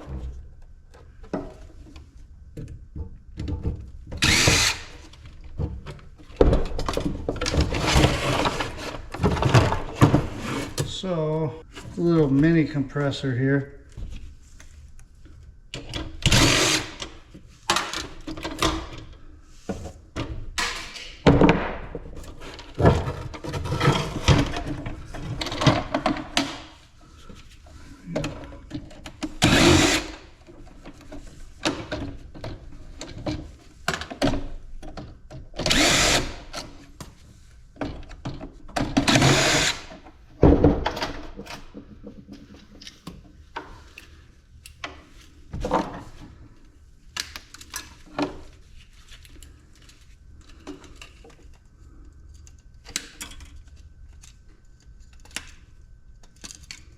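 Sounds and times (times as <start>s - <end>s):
knocks and clunks of parts: 0.0s - 11.1s, 17.0s - 46.5s
power drill running: 4.2s - 5.0s, 16.2s - 17.0s, 29.4s - 30.2s, 35.6s - 36.5s, 39.1s - 39.9s.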